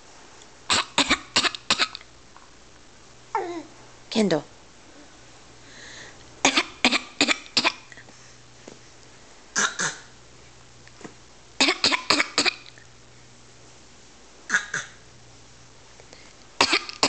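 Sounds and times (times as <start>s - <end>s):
person fake coughing: 0.7s - 2.0s, 6.4s - 7.9s, 9.6s - 10.1s, 11.6s - 12.7s, 16.6s - 17.0s.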